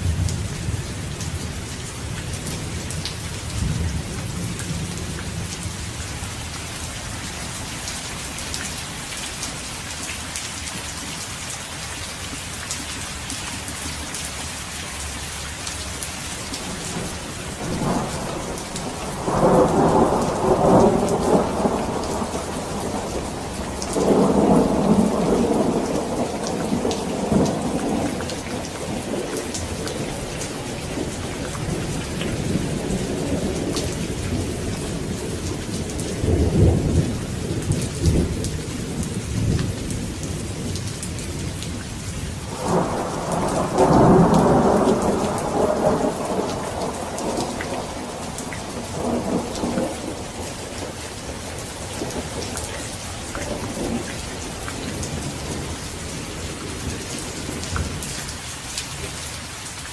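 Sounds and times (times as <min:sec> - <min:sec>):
steady rain: 0:00.0 - 0:59.9
thunder rumbling: 0:16.5 - 0:41.8, 0:42.4 - 0:58.1.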